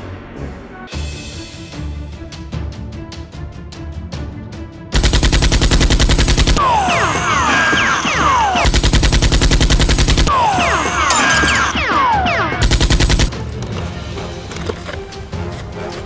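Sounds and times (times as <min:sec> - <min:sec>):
music with steady pulse: 0:00.0 - 0:16.0
rapid machine-gun fire: 0:05.0 - 0:13.3
falling whistles and pings: 0:10.3 - 0:12.6.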